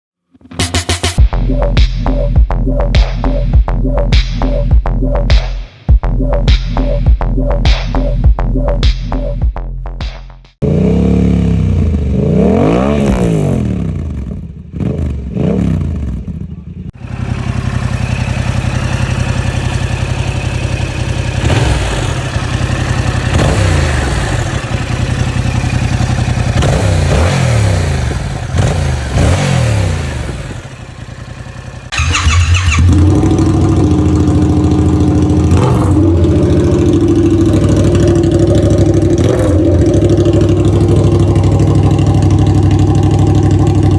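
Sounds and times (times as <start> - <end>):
motorcycle engine revving: 10.6 - 43.9.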